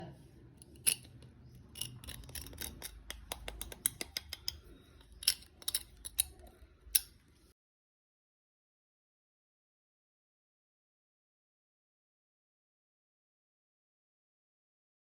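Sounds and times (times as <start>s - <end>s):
kitchen utensils and dishes clinking: 0.6s - 7.2s.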